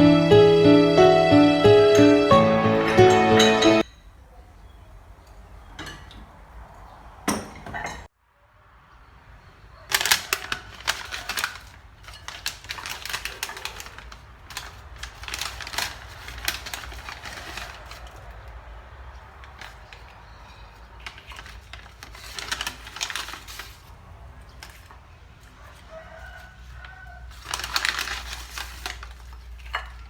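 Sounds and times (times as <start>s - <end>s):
kitchenware clinking and tapping: 5.8s - 6.4s, 7.3s - 8.1s.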